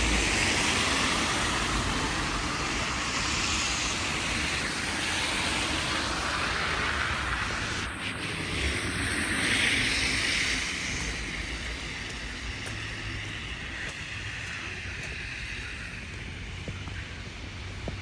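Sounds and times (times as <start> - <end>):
car tyres hissing on wet street: 0.0 - 18.0
steady outdoor hiss: 0.0 - 18.0.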